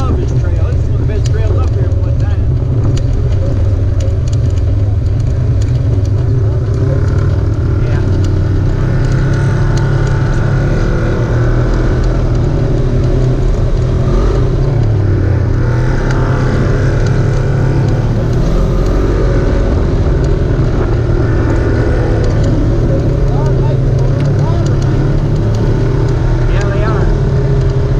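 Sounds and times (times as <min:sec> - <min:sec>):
light clicks and rattles: 0:00.0 - 0:08.4
vehicle engine running: 0:00.0 - 0:27.9.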